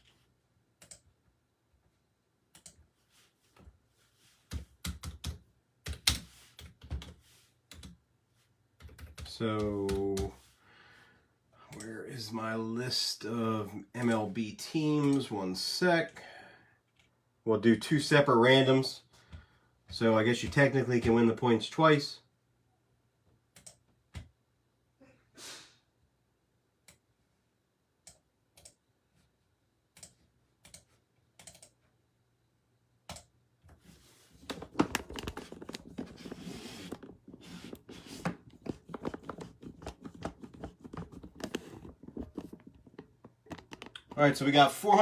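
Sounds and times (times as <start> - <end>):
keyboard and mouse clicks: 0.8 - 1.1, 23.6 - 24.3, 30.0 - 31.8, 33.1 - 33.8, 34.4 - 44.2
fast typing on keyboard: 4.5 - 8.0, 8.8 - 10.3, 34.5 - 44.2.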